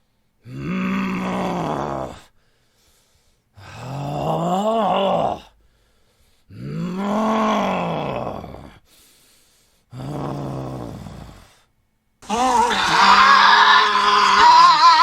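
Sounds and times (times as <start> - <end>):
man groaning: 12.2 - 15.0.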